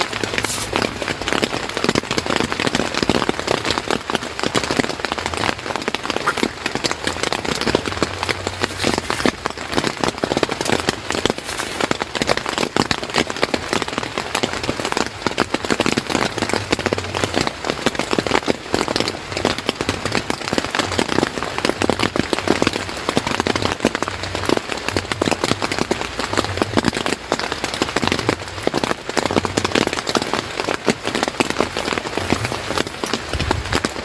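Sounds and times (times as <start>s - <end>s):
heavy rain: 0.0s - 34.0s.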